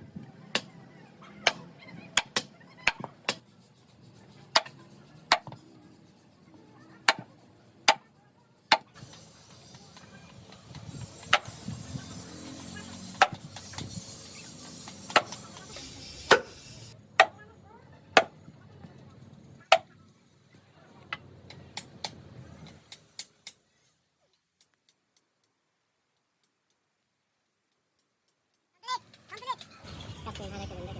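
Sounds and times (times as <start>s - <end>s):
hand tools knocking on wood: 5.3s - 5.6s.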